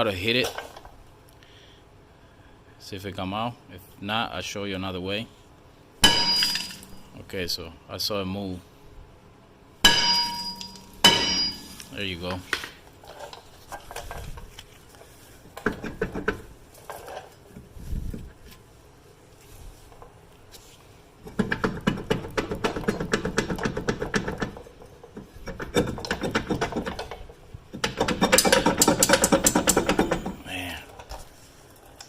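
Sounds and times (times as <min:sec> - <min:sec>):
metal knocks: 0:06.0 - 0:07.1, 0:09.9 - 0:11.8
metal rattling and scraping: 0:09.9 - 0:12.4, 0:21.3 - 0:30.4.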